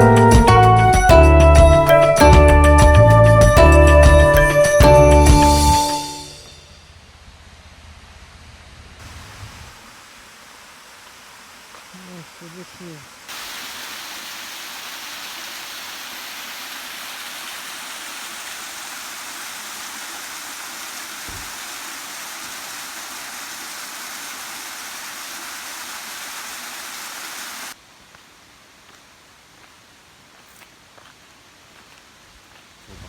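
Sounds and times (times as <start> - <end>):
waterfall roaring: 9.0 - 27.8
short low thump: 21.3 - 21.6.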